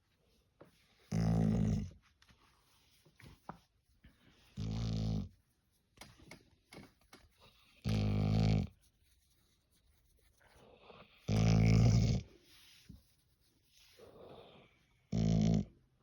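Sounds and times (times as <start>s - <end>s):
dog low drawn-out vocal noises: 0.9s - 2.1s, 4.2s - 5.4s, 7.4s - 8.8s, 10.5s - 12.9s, 13.8s - 16.0s.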